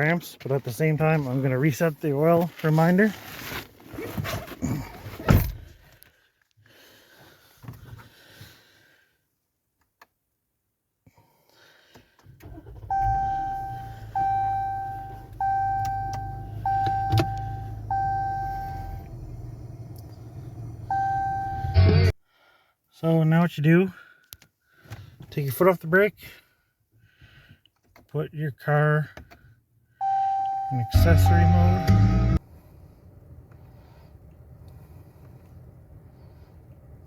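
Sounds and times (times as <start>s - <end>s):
faint shuffling: 0.2s - 4.8s
car engine starting and running: 12.2s - 22.1s, 30.0s - 37.0s
dashboard warning chime: 12.6s - 19.3s, 20.8s - 22.1s, 30.0s - 32.4s.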